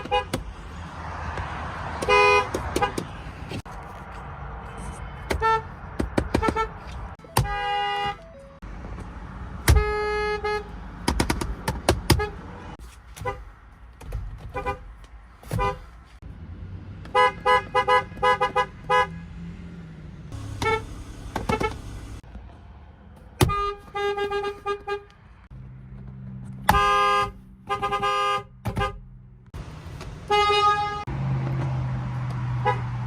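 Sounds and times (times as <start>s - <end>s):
car horn honking: 0.0s - 0.4s, 2.0s - 3.1s, 4.7s - 5.8s, 6.4s - 8.6s, 9.6s - 10.7s, 12.1s - 13.4s, 15.5s - 15.9s, 17.1s - 19.2s, 20.4s - 22.2s, 23.4s - 25.2s, 26.6s - 29.1s, 30.2s - 31.1s.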